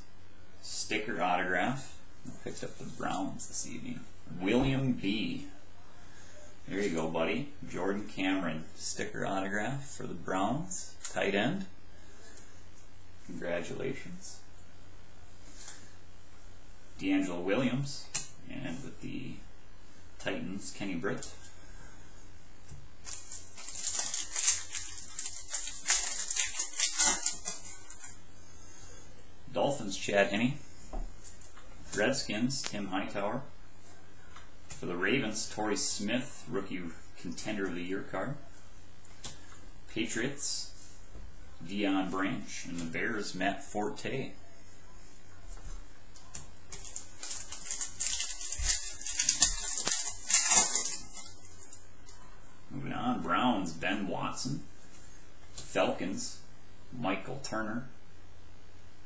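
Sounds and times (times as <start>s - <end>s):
cards and wrappers rustling: 23.0s - 28.2s, 46.2s - 51.8s.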